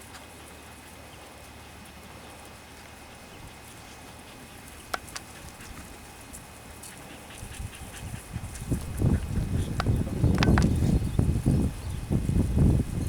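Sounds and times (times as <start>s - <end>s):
steady low rumble: 2.8s - 13.0s
sharp click: 9.8s - 10.8s.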